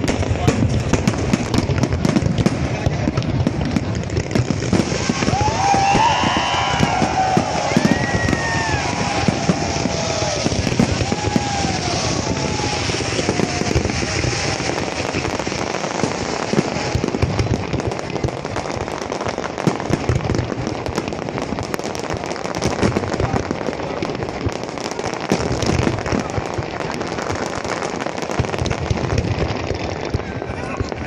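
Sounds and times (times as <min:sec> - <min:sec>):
fireworks crackling and popping: 0:00.0 - 0:31.0.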